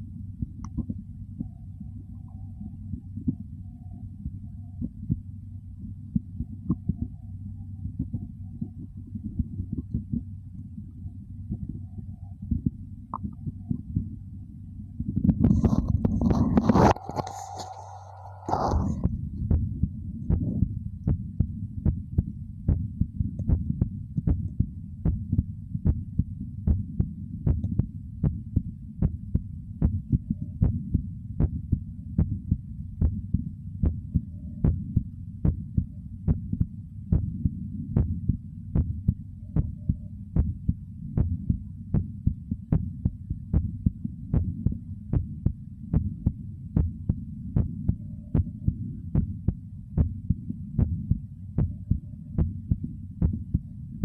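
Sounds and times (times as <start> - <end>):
low rumble: 0.0 - 54.0
heartbeat thumping: 4.2 - 5.3, 7.8 - 10.3, 12.5 - 14.2, 15.0 - 17.7, 18.5 - 53.7.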